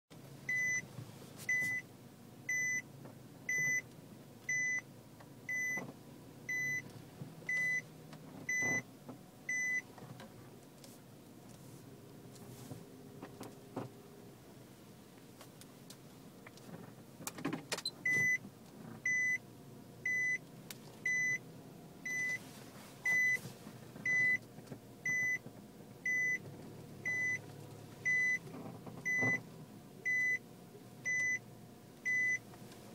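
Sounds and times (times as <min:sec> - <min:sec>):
car warning beeps: 0:00.5 - 0:00.9, 0:01.5 - 0:02.9, 0:03.5 - 0:04.9, 0:05.5 - 0:05.9, 0:06.5 - 0:07.9, 0:08.5 - 0:09.9, 0:17.8 - 0:19.4, 0:20.0 - 0:21.4, 0:22.0 - 0:25.4, 0:26.0 - 0:27.4, 0:28.0 - 0:30.4, 0:31.0 - 0:31.4, 0:32.0 - 0:32.5.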